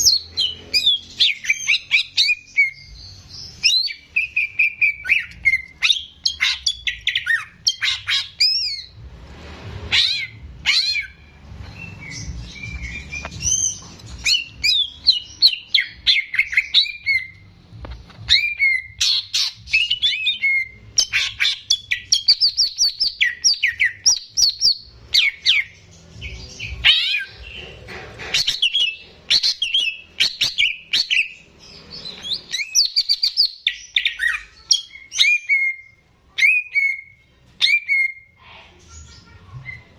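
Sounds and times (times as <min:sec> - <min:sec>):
bird singing whistled chirps: 0:28.4 - 0:38.4.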